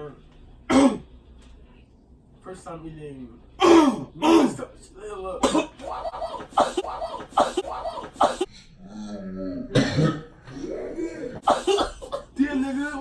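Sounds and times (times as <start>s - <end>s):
man coughing: 0.7s - 1.0s, 3.6s - 4.7s, 5.4s - 8.5s, 11.4s - 12.9s.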